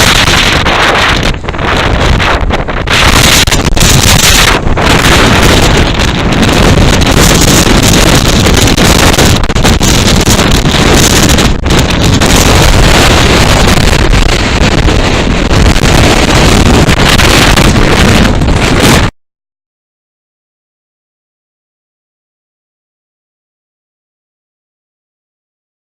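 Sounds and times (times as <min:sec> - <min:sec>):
storm wind blasting microphone: 0:00.0 - 0:19.2.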